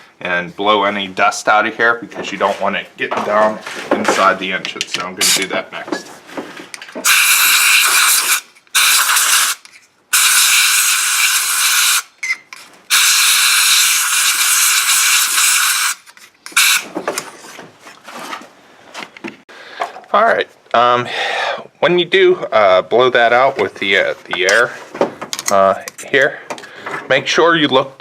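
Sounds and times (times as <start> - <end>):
compressed air blowing: 7.0 - 12.1.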